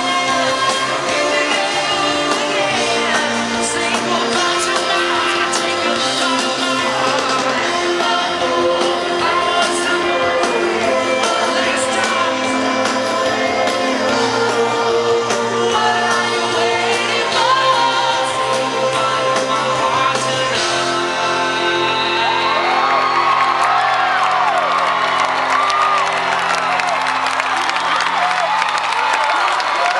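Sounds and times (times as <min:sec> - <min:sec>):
live rock band with singer: 0:00.0 - 0:25.8
crowd shouting and whooping: 0:21.0 - 0:29.9.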